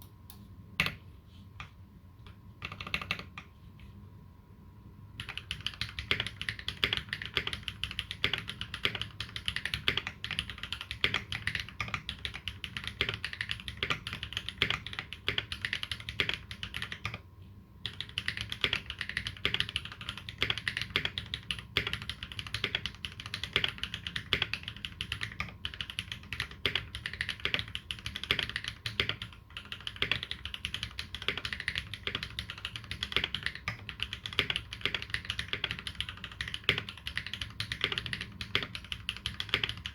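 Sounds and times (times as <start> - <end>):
fast typing on mechanical keyboard: 2.6 - 3.5, 5.2 - 17.2, 17.8 - 39.9.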